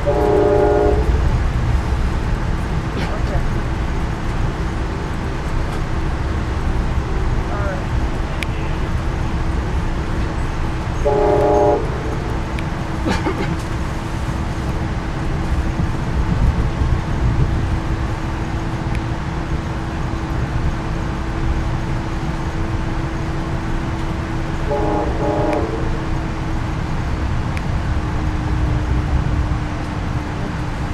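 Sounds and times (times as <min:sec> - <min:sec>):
train horn blasts: 0:00.0 - 0:01.3, 0:11.0 - 0:12.6, 0:24.6 - 0:26.3
train wheels rumbling on rails: 0:00.0 - 0:30.9.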